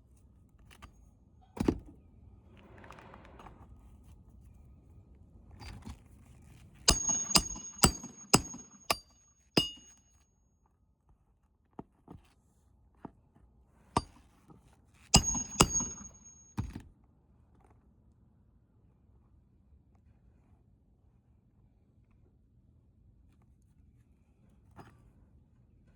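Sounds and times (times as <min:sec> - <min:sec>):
hammer blows on metal: 0:06.9 - 0:09.9, 0:15.2 - 0:16.6.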